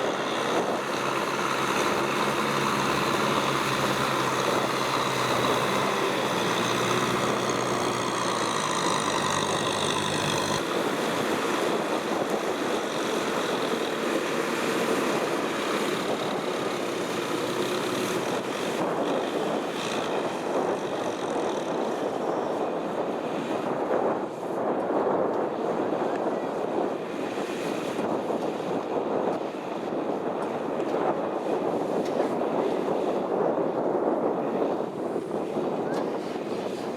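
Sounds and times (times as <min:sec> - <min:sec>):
tractor engine running: 0:00.0 - 0:22.1
rough noisy rush: 0:00.0 - 0:23.3.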